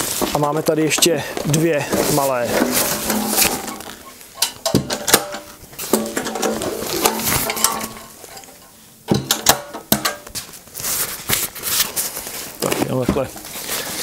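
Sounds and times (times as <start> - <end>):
metal boxes knocking and clinking: 1.9 - 10.3.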